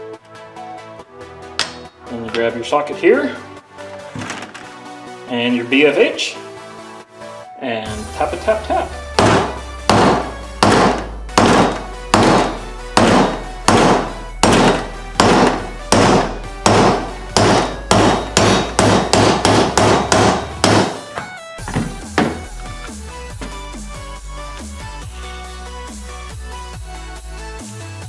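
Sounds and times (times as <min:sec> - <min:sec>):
background music: 0:00.0 - 0:28.0
hammer striking metal socket: 0:01.6 - 0:01.9, 0:09.2 - 0:21.3.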